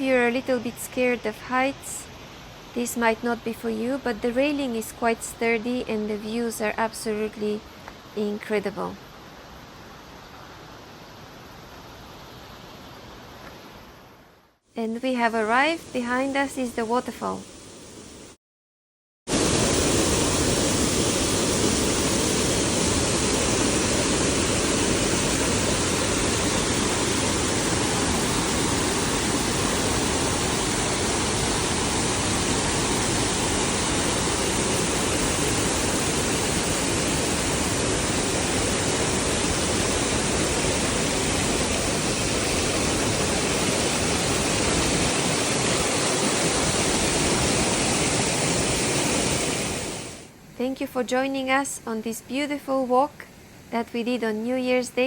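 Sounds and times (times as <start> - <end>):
waterfall rushing: 19.3 - 50.3.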